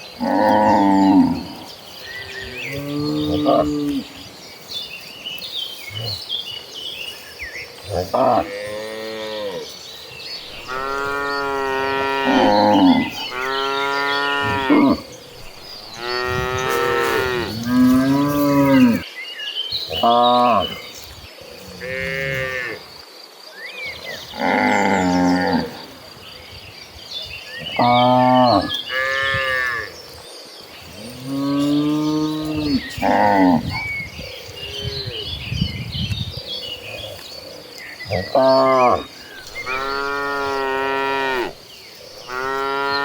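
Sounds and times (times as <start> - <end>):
cattle mooing: 10.5 - 19.0, 38.1 - 41.6, 42.2 - 43.0.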